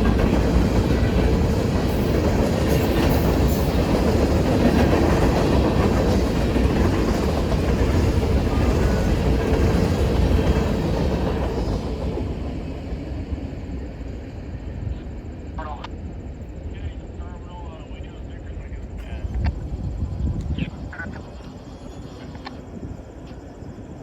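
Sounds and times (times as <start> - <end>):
wheels clacking on rail joints: 0.0 - 12.3
freight train rumbling past: 0.0 - 24.0.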